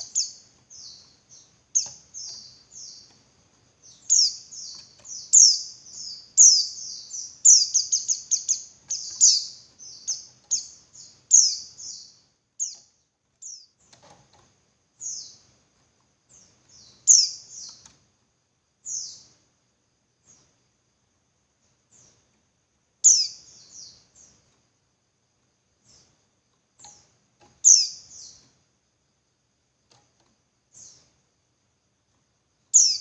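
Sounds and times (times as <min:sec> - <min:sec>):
bird high downward chirps: 0:03.8 - 0:13.8, 0:16.7 - 0:17.9, 0:23.0 - 0:24.1, 0:27.6 - 0:28.5, 0:32.7 - 0:33.0.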